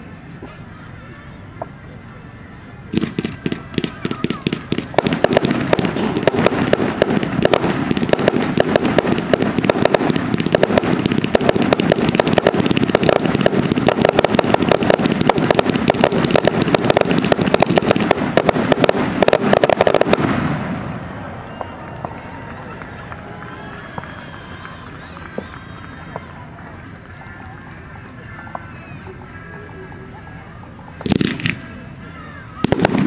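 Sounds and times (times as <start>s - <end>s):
fireworks bangs and crackling: 2.9s - 31.9s, 32.6s - 33.0s.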